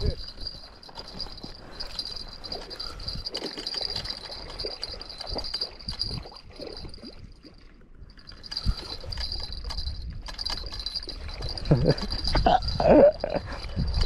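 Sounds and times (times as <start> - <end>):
water sloshing and splashing: 0.0 - 12.7.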